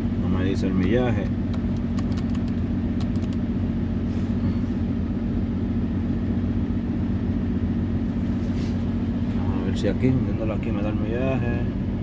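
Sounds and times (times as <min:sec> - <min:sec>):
car engine idling with misfire: 0:00.0 - 0:12.0.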